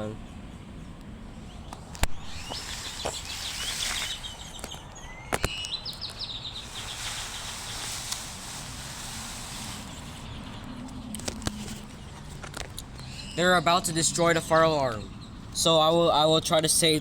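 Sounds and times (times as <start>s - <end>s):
steady background noise: 0.0s - 17.0s
bird chirping in trills: 0.2s - 11.1s, 13.0s - 15.6s.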